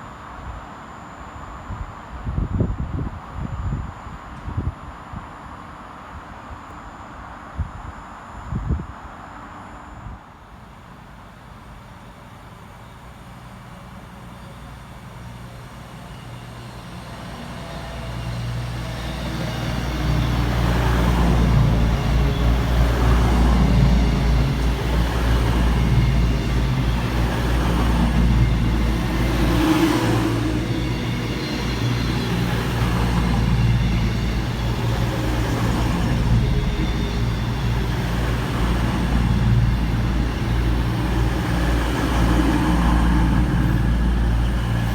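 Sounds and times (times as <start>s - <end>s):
train rumbling past: 13.2s - 44.9s.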